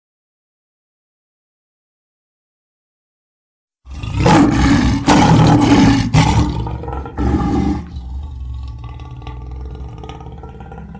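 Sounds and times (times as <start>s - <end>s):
loud roar sound effect: 3.9s - 10.9s.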